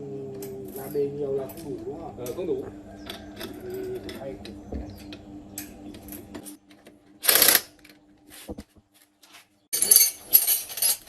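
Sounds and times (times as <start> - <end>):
metal parts clicking and clattering: 9.8 - 11.0.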